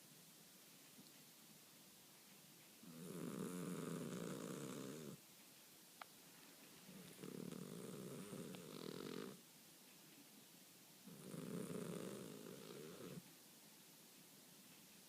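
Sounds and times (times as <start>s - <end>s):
cat snoring: 2.8s - 5.2s, 6.9s - 9.4s, 11.1s - 13.2s.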